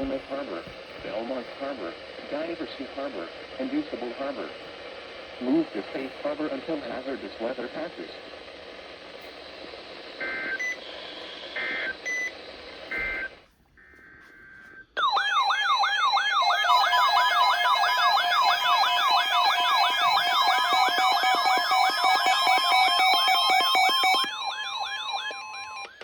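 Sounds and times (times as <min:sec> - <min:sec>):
two-pitch data bursts: 0:13.9 - 0:25.9.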